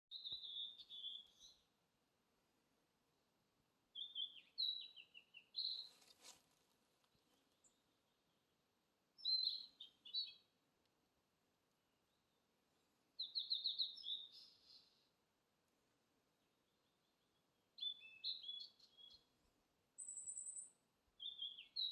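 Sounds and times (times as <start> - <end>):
songbird singing trills: 0.1 - 1.6, 4.0 - 6.0, 9.2 - 10.5, 13.2 - 15.0, 16.7 - 19.3, 20.0 - 21.9.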